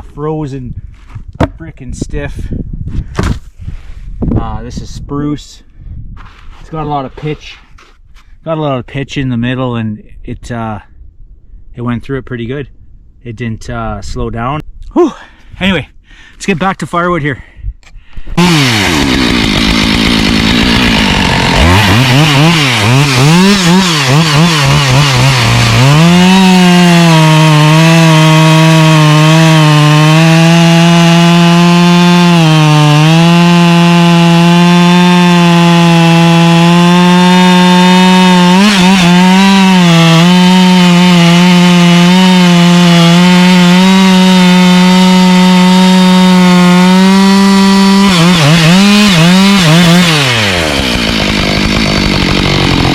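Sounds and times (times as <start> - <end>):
chainsaw cutting through wood: 18.2 - 52.9
chainsaw revving: 18.3 - 52.9.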